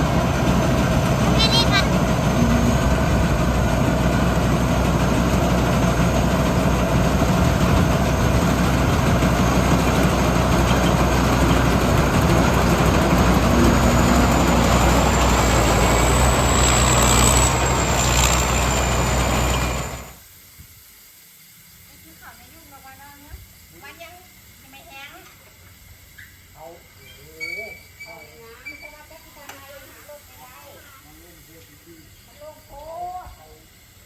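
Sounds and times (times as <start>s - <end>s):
large engine running: 0.0s - 20.2s.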